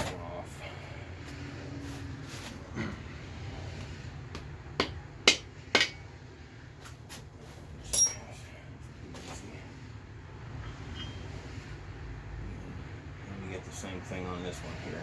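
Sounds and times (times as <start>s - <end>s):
ringing metallic clink: 7.9s - 8.4s.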